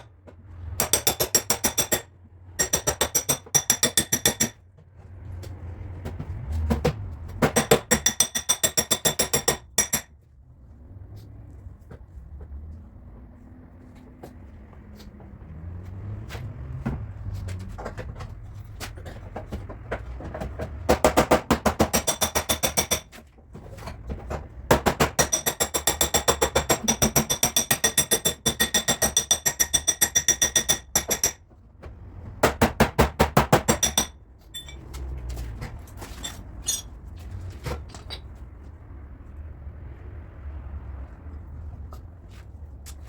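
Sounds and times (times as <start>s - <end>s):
hammering on sheet metal: 0.0s - 4.6s, 6.8s - 10.1s, 20.8s - 23.1s, 24.7s - 31.4s, 32.4s - 34.2s.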